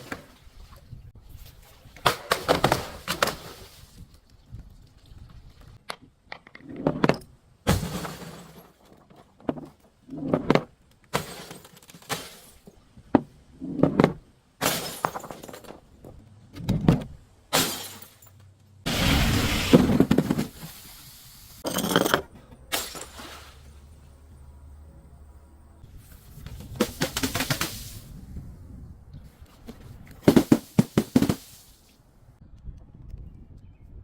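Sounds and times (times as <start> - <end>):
glass bottles crushing and shattering: 7.0 - 8.9, 11.2 - 12.7, 14.6 - 15.8, 17.6 - 18.4.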